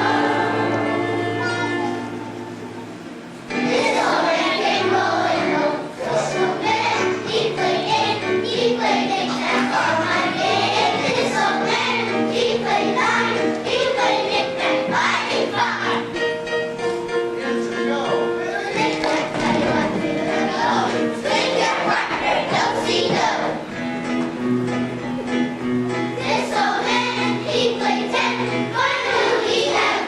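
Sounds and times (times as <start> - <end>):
children's choir singing: 0.0 - 23.9, 26.1 - 30.0
instrumental accompaniment: 0.0 - 30.0.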